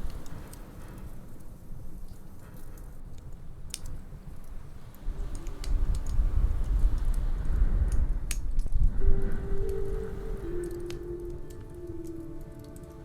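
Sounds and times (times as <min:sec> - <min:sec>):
wood fire crackling and popping: 0:00.0 - 0:13.0
low rumble: 0:08.6 - 0:13.0
soft steady tone: 0:08.9 - 0:13.0.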